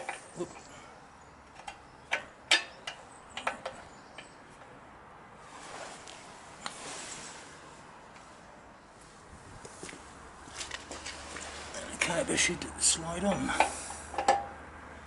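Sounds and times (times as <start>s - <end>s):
soft rustling: 5.4s - 7.6s.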